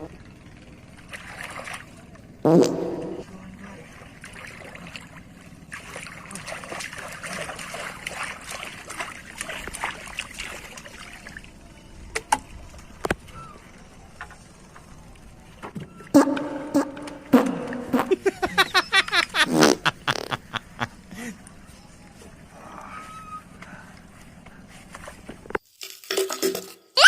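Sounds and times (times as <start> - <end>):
fart sound effect: 2.4 - 3.3, 16.1 - 18.2, 19.4 - 20.5.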